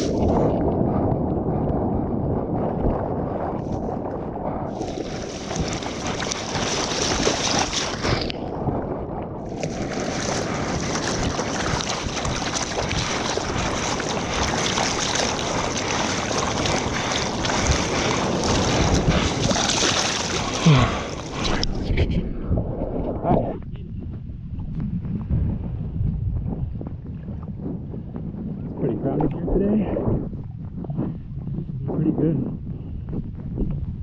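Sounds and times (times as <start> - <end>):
wind buffeting camera: 0.0 - 34.0
ocean water rushing and splashing: 4.7 - 8.5, 9.4 - 21.8.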